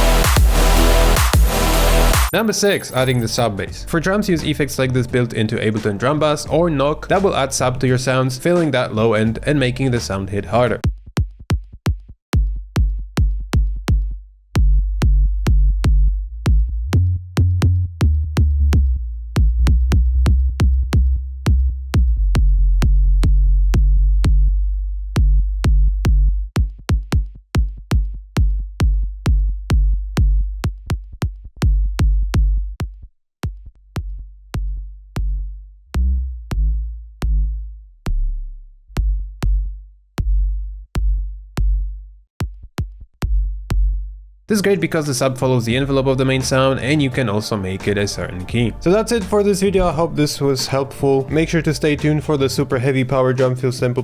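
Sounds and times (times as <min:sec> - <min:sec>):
electronic drum loop with sub-bass: 0:00.0 - 0:03.4, 0:10.8 - 0:16.8, 0:25.2 - 0:32.8, 0:45.7 - 0:46.7, 0:48.6 - 0:49.5.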